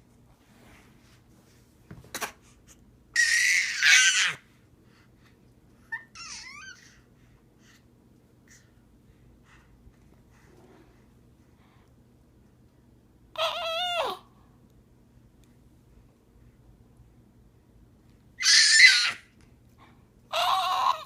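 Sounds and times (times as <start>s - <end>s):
cat yowling and meowing: 18.4s - 19.2s.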